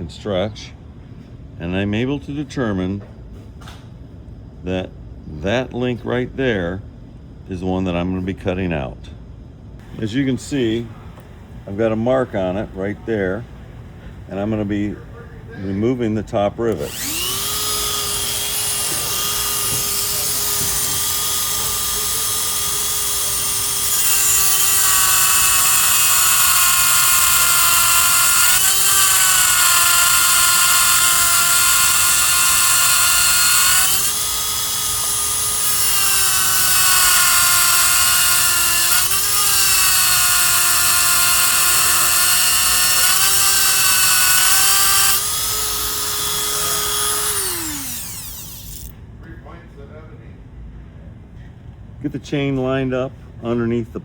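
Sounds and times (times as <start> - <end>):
grinder grinding metal: 15.6 - 48.9
electric grinding tool whining: 16.7 - 48.9.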